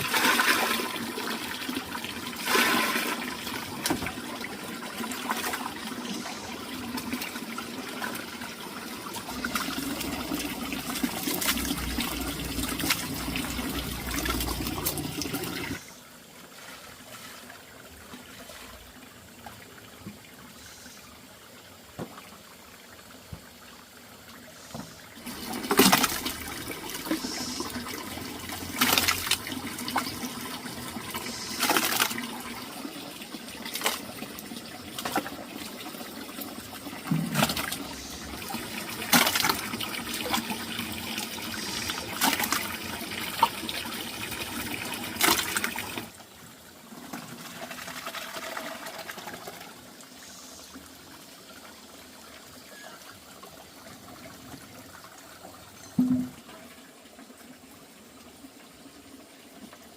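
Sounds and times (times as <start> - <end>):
water trickling: 0.0 - 15.9, 21.4 - 59.9
water splashing and pouring: 0.0 - 19.8, 24.8 - 52.2.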